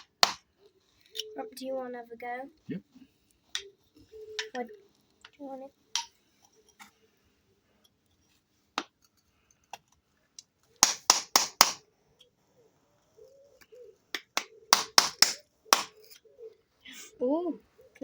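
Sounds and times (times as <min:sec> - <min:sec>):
sharp taps on stone: 0:00.0 - 0:00.4, 0:10.8 - 0:11.8, 0:14.1 - 0:16.0.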